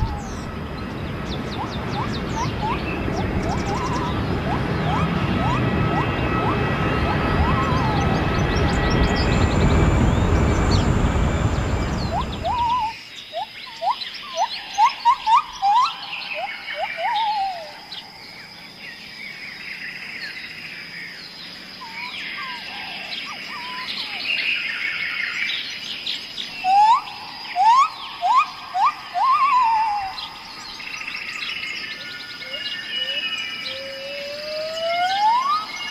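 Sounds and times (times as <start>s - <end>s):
steady high-pitched tone: 0.0s - 13.0s
birds chirping and twittering: 0.0s - 35.9s
bird upslurred whistles: 1.5s - 9.2s, 12.0s - 17.8s, 26.6s - 30.3s, 32.4s - 35.9s.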